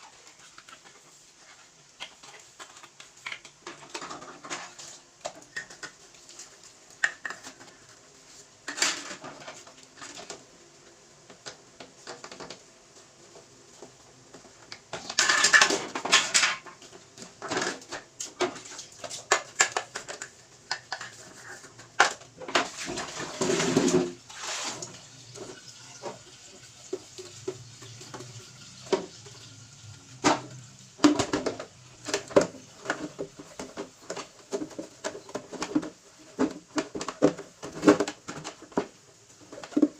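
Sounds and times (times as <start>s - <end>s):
dishes and containers clattering: 2.6s - 8.0s, 14.9s - 39.9s.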